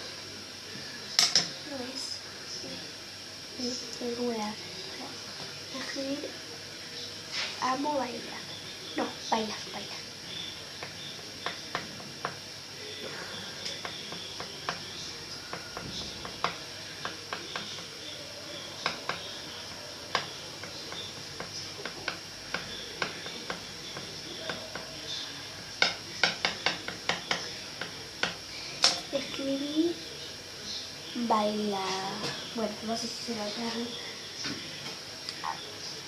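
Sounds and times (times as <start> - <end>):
utensil tapping on table: 13.6 - 14.9, 15.5 - 17.9, 18.8 - 19.4, 20.1 - 24.9, 25.8 - 29.0.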